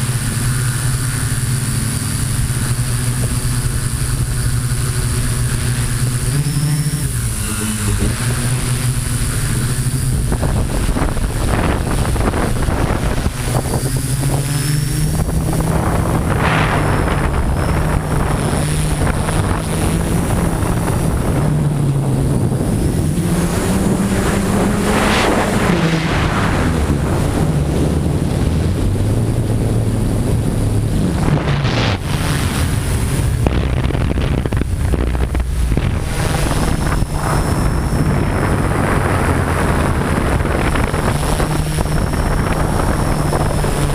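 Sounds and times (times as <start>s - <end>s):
drone propellers humming: 0.0s - 43.9s
wind on microphone: 0.0s - 43.9s.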